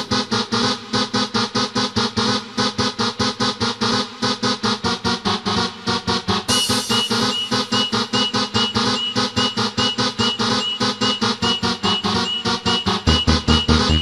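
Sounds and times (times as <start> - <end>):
pulsing synthesizer pattern: 0.0 - 14.0
steady bass line: 0.0 - 14.0
short repeating high chirp: 6.5 - 14.0.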